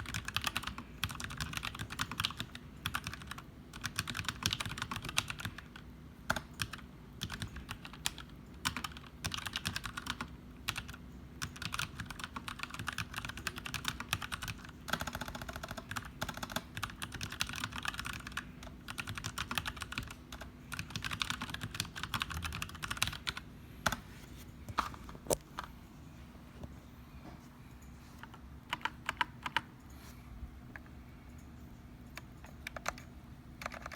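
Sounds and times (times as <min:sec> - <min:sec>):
mechanical keyboard typing: 0:00.0 - 0:24.0, 0:28.2 - 0:29.9, 0:32.0 - 0:33.9.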